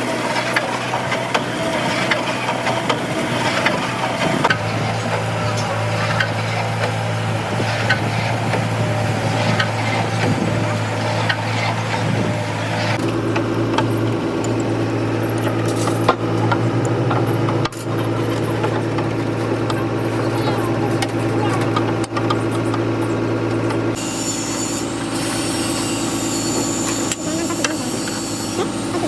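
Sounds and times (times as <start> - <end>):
machine humming: 0.0 - 29.0
higher pulsing drone: 22.6 - 29.0.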